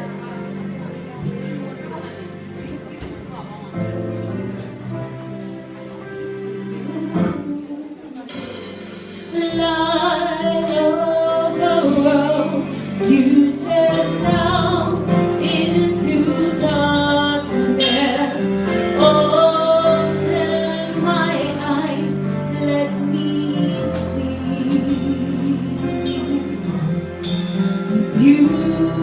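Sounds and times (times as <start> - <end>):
woman singing: 6.7 - 8.7, 9.3 - 27.2, 27.8 - 29.0
band with bass and percussion: 8.2 - 29.0.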